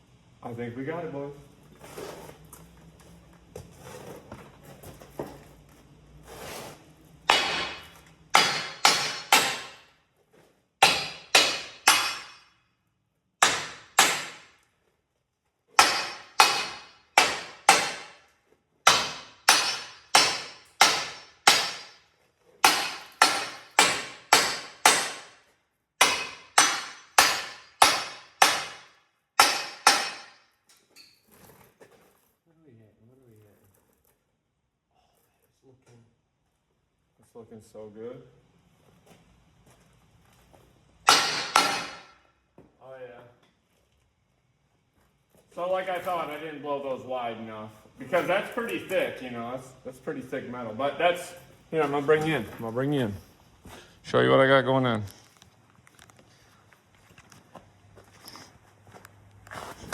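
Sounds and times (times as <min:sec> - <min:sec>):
hammer striking steel: 0:07.3 - 0:09.9, 0:10.8 - 0:12.6, 0:13.4 - 0:14.6, 0:15.8 - 0:18.2, 0:18.8 - 0:22.0, 0:22.6 - 0:25.4, 0:26.0 - 0:30.5, 0:41.0 - 0:42.2.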